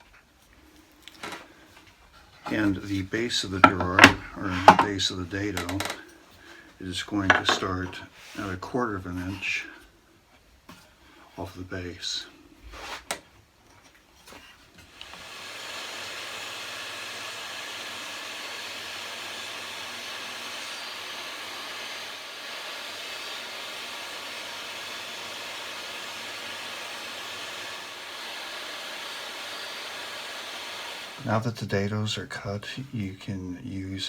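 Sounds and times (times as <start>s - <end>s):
table saw cutting wood: 2.4s - 6.0s, 7.2s - 8.6s, 14.8s - 31.4s.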